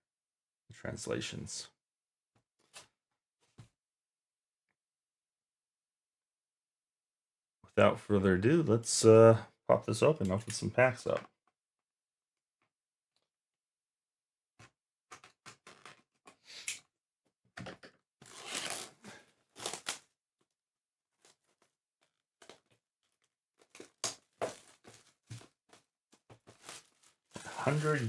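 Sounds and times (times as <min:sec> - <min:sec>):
packaging tearing and crinkling: 0:18.2 - 0:19.0, 0:19.6 - 0:20.0, 0:26.5 - 0:28.0.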